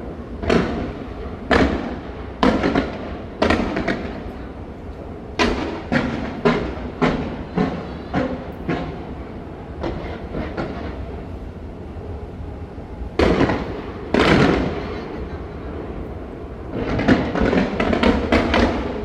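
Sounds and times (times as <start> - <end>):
fireworks bursting with sharp booms: 5.4 - 9.0, 13.2 - 15.0, 16.7 - 19.0.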